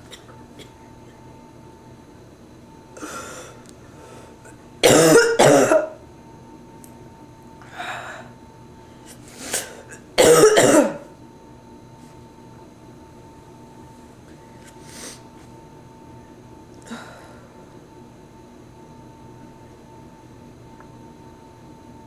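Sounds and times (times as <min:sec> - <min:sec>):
person coughing harshly: 0:04.8 - 0:06.0, 0:09.4 - 0:11.1.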